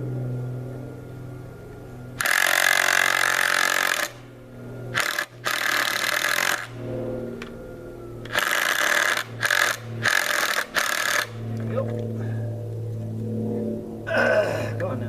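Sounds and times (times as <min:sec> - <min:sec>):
impact driver hammering: 0:04.9 - 0:06.7, 0:08.3 - 0:11.3.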